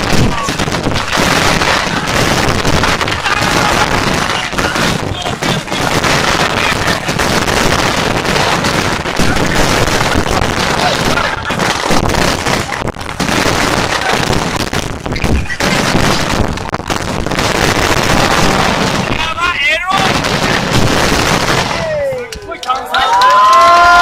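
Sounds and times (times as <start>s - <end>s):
fireworks bursts and crackles: 0.0s - 24.0s.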